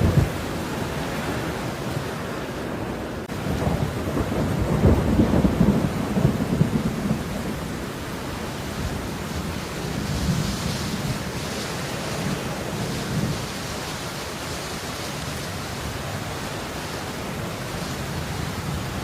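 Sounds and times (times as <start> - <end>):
distant thunder rumble: 0.0 - 13.9
steady rain: 0.0 - 19.0.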